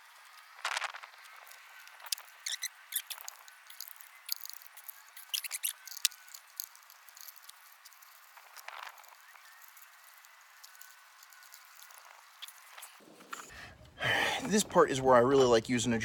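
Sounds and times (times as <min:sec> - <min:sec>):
high squeaks: 0:01.2 - 0:13.5.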